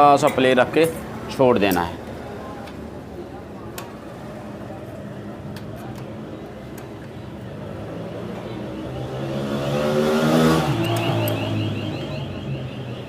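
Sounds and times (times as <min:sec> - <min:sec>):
motor vehicle passing by: 0:07.4 - 0:13.0.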